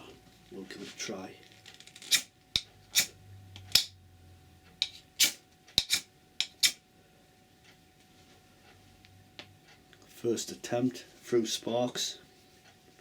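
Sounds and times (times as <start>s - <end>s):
firesteel rod scraping knife spine: 1.9s - 3.9s, 4.8s - 6.8s.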